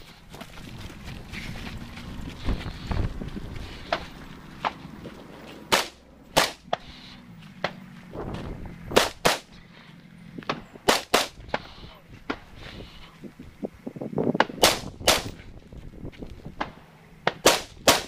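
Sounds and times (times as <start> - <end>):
rifle shots: 5.7 - 6.7, 8.9 - 9.5, 10.8 - 11.4, 14.6 - 15.4, 17.3 - 18.0.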